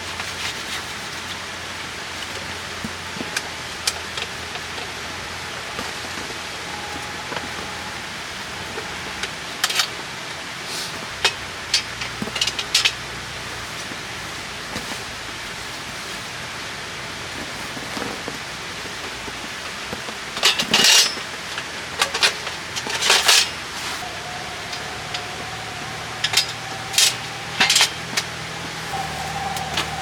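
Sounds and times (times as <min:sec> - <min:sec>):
steady hiss: 0:00.0 - 0:30.0
faint steady tone: 0:01.6 - 0:10.6, 0:22.0 - 0:30.0
objects clinking and clattering: 0:20.4 - 0:30.0.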